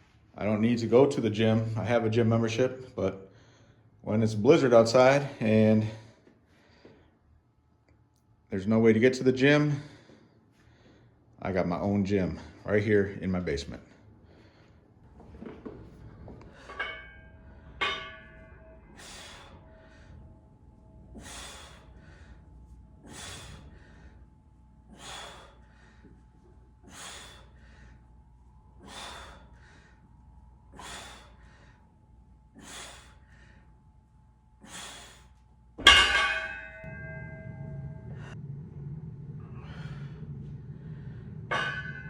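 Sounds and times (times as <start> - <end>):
gym equipment metal clanks: 15.4 - 19.5, 35.8 - 38.4, 41.3 - 42.0
person breathing out hard: 21.1 - 22.4, 23.0 - 24.2, 24.9 - 26.2, 26.8 - 28.0, 28.8 - 30.0, 30.7 - 31.8, 32.6 - 33.7.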